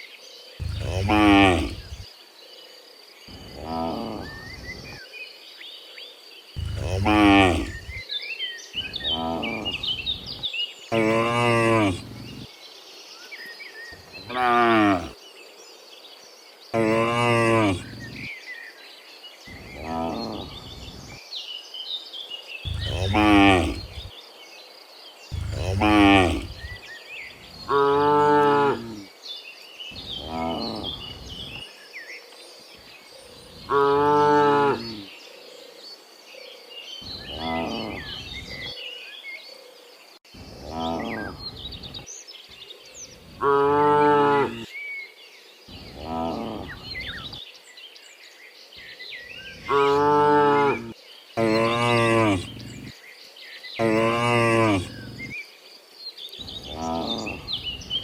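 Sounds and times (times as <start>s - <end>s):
faint bird chirps: 0.0s - 43.6s
cattle mooing: 0.6s - 2.0s, 6.6s - 8.0s, 11.0s - 12.4s, 14.3s - 15.1s, 16.8s - 18.3s, 22.7s - 24.1s, 25.3s - 26.8s, 49.7s - 52.9s, 53.8s - 55.3s.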